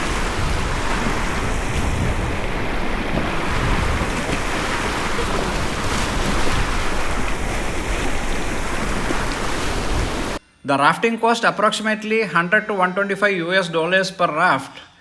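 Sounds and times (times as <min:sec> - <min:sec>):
river water rushing: 0:00.0 - 0:10.4
wind buffeting microphone: 0:00.0 - 0:10.4.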